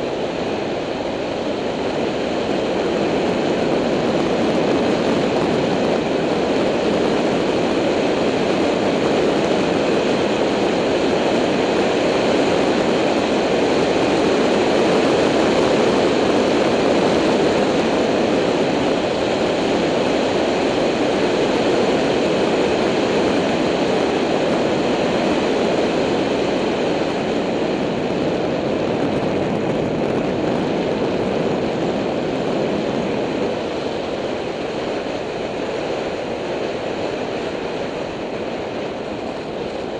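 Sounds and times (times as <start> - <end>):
wind rushing on microphone: 0.0 - 39.9.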